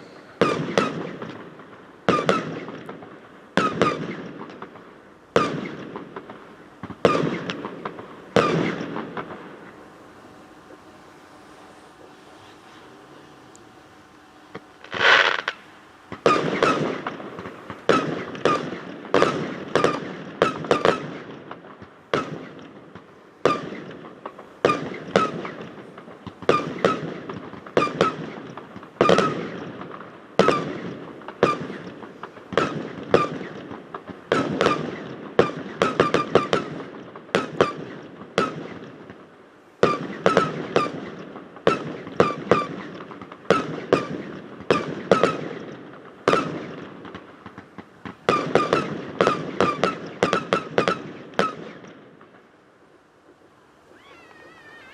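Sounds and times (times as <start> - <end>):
fireworks sharp bangs with echo: 0.0 - 52.5.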